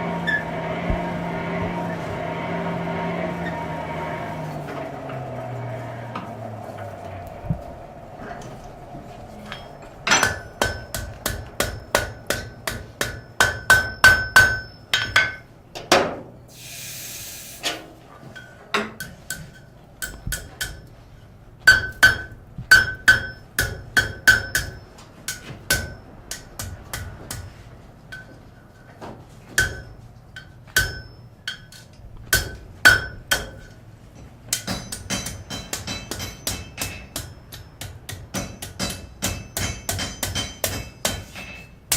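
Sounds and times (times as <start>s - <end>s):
hammer striking metal on anvil: 9.5s - 15.4s, 18.4s - 20.9s, 21.7s - 27.5s, 29.6s - 33.8s, 34.5s - 41.9s
brief hiss: 16.5s - 17.8s.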